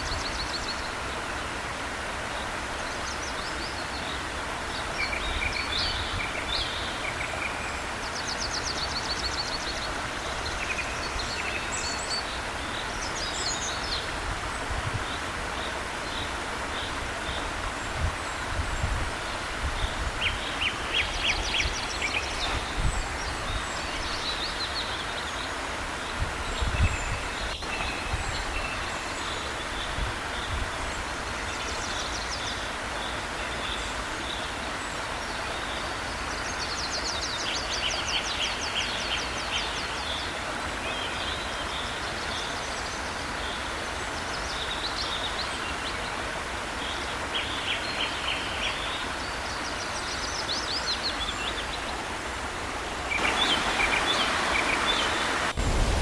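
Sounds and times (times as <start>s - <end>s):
waterfall rushing: 0.0s - 56.0s
low thumps: 55.5s - 56.0s.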